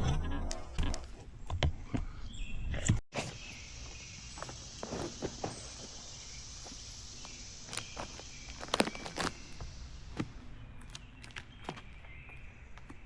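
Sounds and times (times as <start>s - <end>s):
high outdoor hiss: 3.2s - 11.2s
footsteps crunching on trail: 3.4s - 13.0s.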